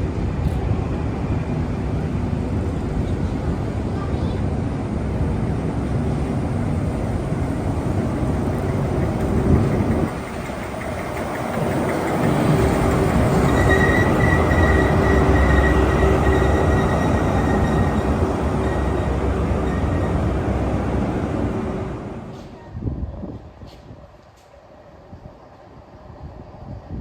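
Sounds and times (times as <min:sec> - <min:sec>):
train rumbling on rails: 0:00.0 - 0:27.0
high wheel squeal: 0:11.5 - 0:21.2.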